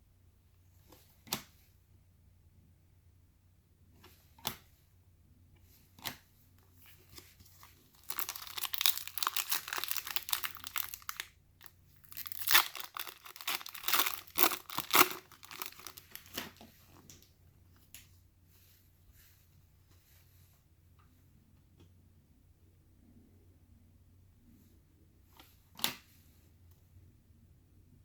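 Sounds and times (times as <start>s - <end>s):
foil wrapper tearing and crinkling: 7.9s - 11.3s, 12.0s - 16.5s.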